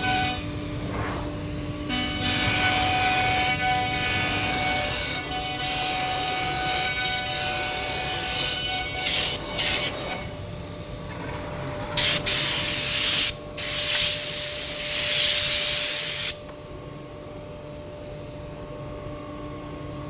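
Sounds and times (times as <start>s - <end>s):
cutter milling panel hiss: 12.0s - 16.4s.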